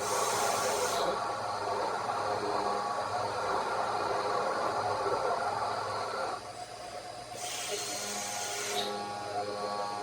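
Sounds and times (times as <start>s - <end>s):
mill grinding steel with whine: 0.0s - 6.6s.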